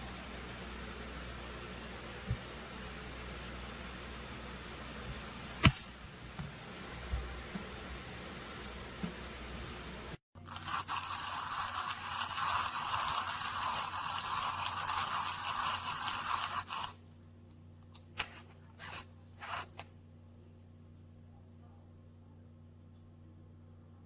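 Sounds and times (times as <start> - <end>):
hand grinder crunching coffee beans: 10.4 - 17.0.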